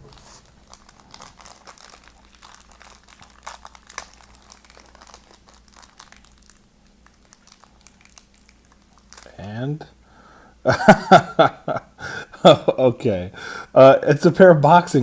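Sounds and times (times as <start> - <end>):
plastic packets crinkling: 0.0 - 9.4.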